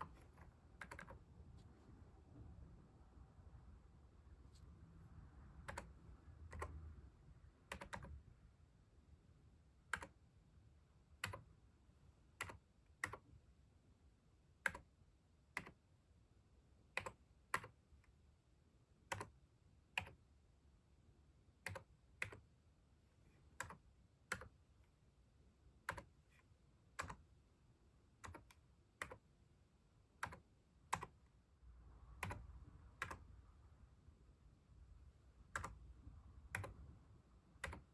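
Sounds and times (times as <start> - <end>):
computer keyboard key clicks: 0.8 - 1.2, 5.7 - 5.9, 7.7 - 8.2, 21.7 - 22.4, 32.2 - 33.2, 35.5 - 35.8, 36.5 - 36.8, 37.6 - 37.9.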